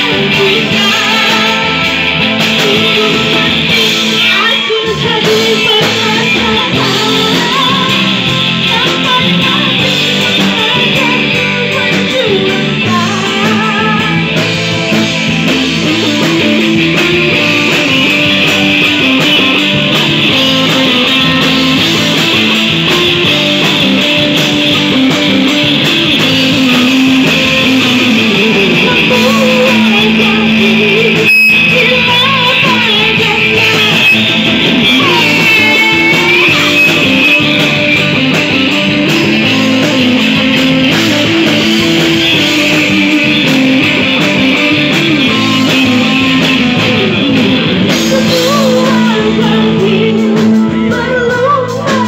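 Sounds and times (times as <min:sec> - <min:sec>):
person singing: 0:00.0 - 0:14.5, 0:25.1 - 0:52.0
drum kit: 0:00.0 - 0:52.0
guitar: 0:00.0 - 0:52.0.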